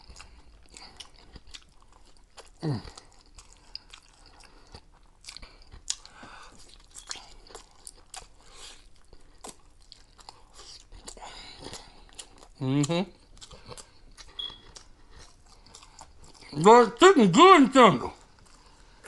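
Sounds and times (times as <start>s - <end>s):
chewing and biting food: 0.0s - 16.6s, 18.1s - 19.0s.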